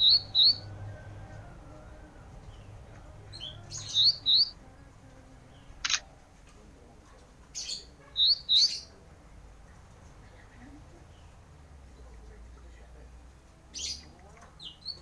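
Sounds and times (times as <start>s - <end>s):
songbird chirping: 0.0s - 6.0s, 7.5s - 11.5s, 13.6s - 15.0s.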